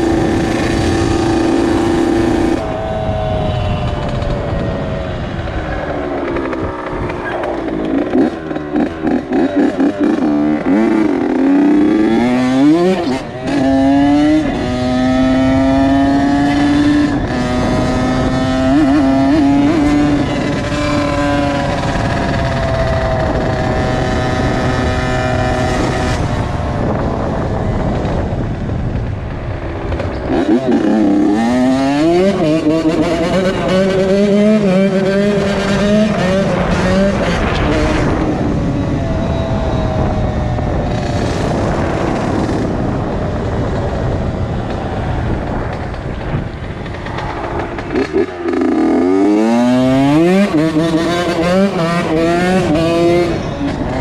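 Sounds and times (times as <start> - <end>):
two-stroke motorcycle engine revving: 0.0 - 54.0.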